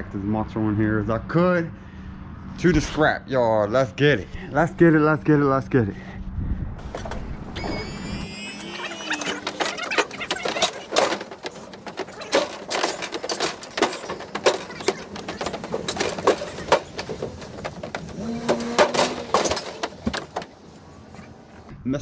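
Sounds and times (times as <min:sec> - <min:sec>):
clatter of sharp knocks and clicks: 0:08.8 - 0:21.3.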